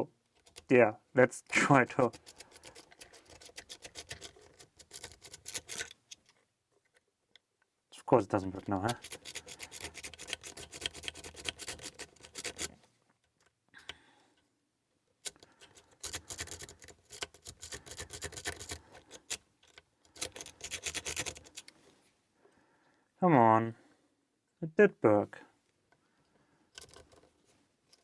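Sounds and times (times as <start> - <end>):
lock pick scraping and clicking: 0.2 - 0.7, 2.0 - 7.0, 8.5 - 14.0, 15.2 - 21.8, 26.7 - 28.0.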